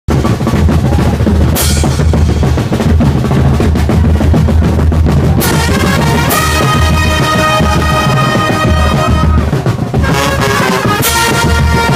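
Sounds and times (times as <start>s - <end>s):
bass drum and snare beat: 0.1s - 11.9s
cymbal crashes: 1.6s - 3.0s
horns holding notes: 5.3s - 11.9s.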